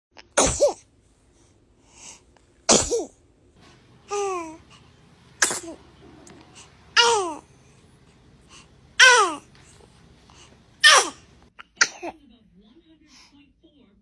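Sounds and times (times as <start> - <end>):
infant sneezing: 0.4 - 0.9, 2.0 - 3.2, 5.4 - 5.8, 6.5 - 7.4, 9.0 - 9.5, 10.8 - 12.2.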